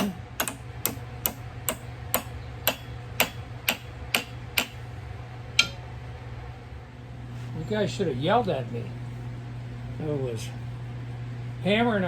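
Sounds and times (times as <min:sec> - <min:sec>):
hammer tapping pin into metal: 0:00.0 - 0:04.8, 0:05.6 - 0:05.8.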